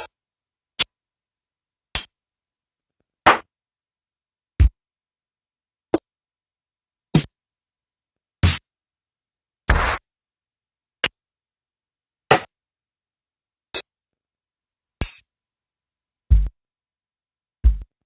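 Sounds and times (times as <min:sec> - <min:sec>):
drum machine hits: 0:16.3 - 0:16.5, 0:17.6 - 0:17.9
deep kick drum: 0:16.3 - 0:16.6, 0:17.6 - 0:18.0.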